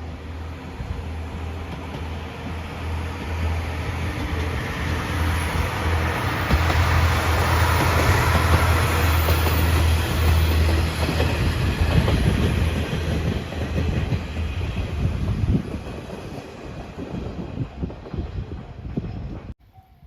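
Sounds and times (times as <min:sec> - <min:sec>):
electric train humming: 0:00.0 - 0:19.4
train wheels clacking over rail joints: 0:05.6 - 0:17.4.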